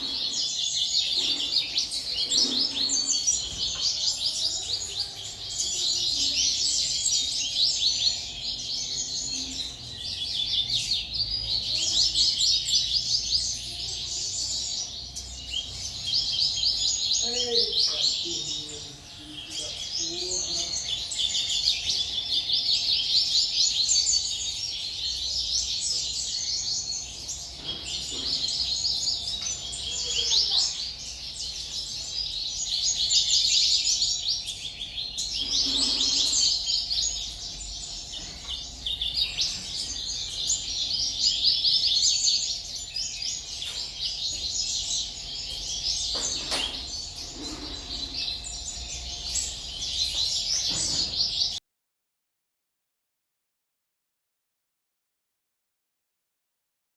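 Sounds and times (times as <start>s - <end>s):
small birds chirping: 0.0s - 51.6s.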